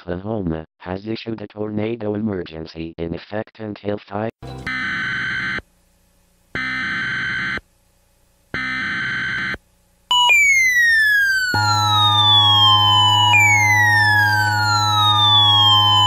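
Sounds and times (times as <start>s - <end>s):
loud buzzing beeps: 4.6s - 5.6s, 6.6s - 7.6s, 8.6s - 10.7s, 11.6s - 16.0s
falling siren tone: 8.6s - 16.0s.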